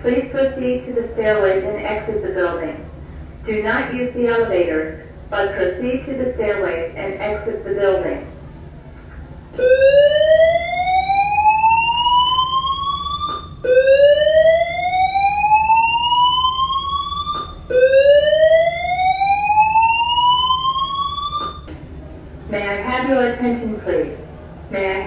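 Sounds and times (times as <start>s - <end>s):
slow-whoop fire alarm tone: 9.6s - 21.8s.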